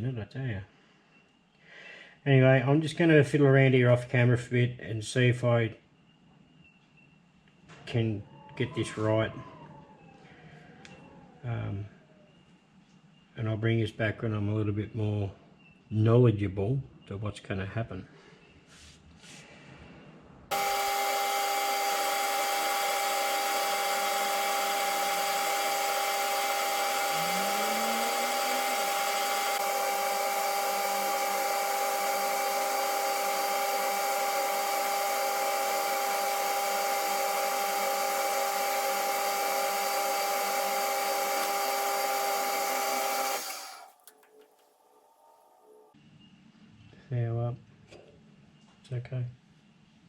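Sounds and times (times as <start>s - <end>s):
metal lathe hiss and whine: 20.5s - 43.9s.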